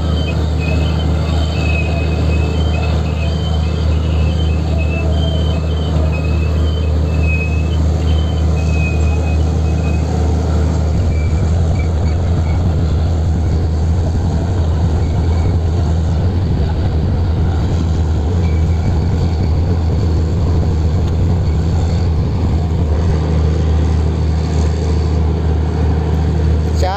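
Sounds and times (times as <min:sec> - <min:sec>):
boat engine drone: 0:00.0 - 0:26.9.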